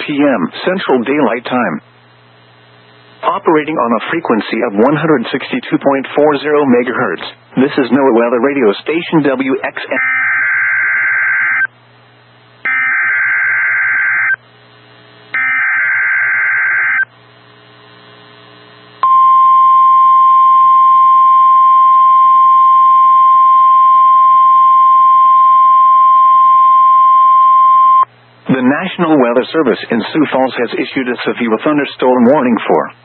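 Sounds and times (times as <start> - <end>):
steady warning alarm tone: 9.9 - 11.7, 12.6 - 14.4, 15.3 - 17.1, 19.0 - 28.1
buzzy data tone bursts: 12.6 - 28.1.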